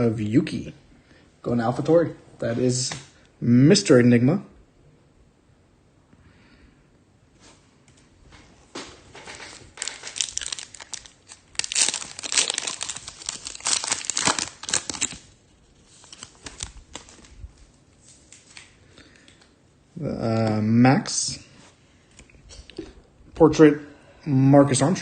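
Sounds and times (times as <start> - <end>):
foil wrapper crinkling and tearing: 9.3 - 17.4.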